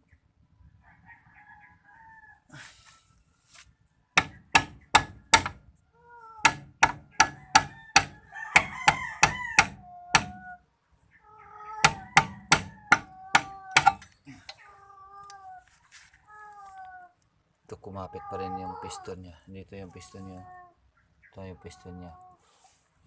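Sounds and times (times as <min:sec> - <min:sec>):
hammer striking metal: 0:04.2 - 0:05.6, 0:06.4 - 0:10.4, 0:11.8 - 0:14.1.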